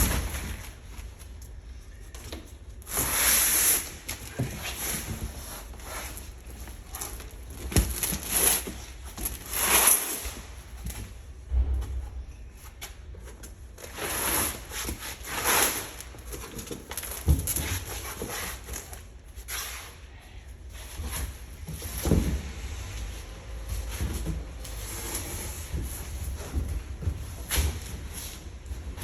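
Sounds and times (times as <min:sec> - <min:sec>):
rustling and handling noise: 0:00.0 - 0:29.0
low rumble: 0:11.4 - 0:13.7.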